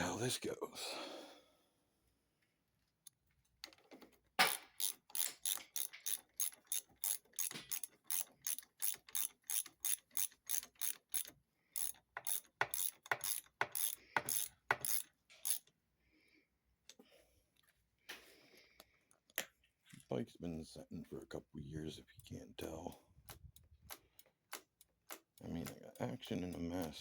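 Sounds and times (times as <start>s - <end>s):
ratchet wrench clicking: 4.4s - 15.7s, 22.2s - 27.0s.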